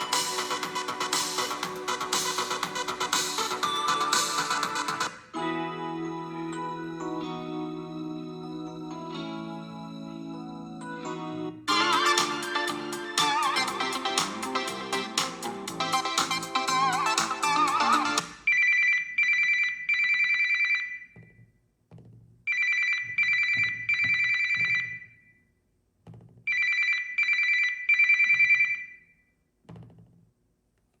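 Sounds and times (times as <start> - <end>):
melodic ringtone: 15.8 - 21.0, 22.5 - 25.1
high electronic phone ring: 18.5 - 21.4, 22.5 - 25.4, 26.5 - 29.2.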